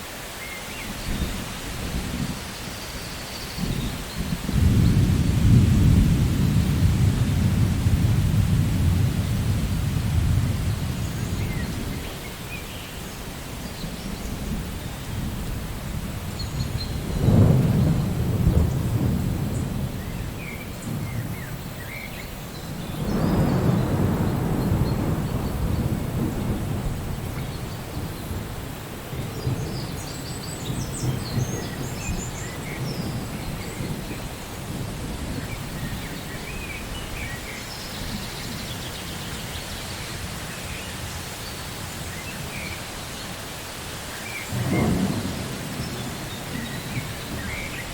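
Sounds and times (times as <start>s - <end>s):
steady rain: 0.0s - 47.9s
rolling thunder: 3.5s - 12.3s, 13.4s - 22.0s, 22.6s - 39.5s, 44.5s - 47.9s.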